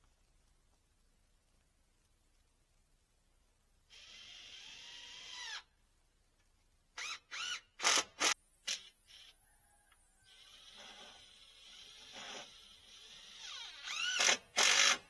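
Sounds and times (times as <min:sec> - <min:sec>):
power drill whirring: 0:03.9 - 0:05.7, 0:07.0 - 0:09.3, 0:10.3 - 0:15.0
drill bursts and knocks: 0:07.0 - 0:09.3, 0:10.3 - 0:15.0.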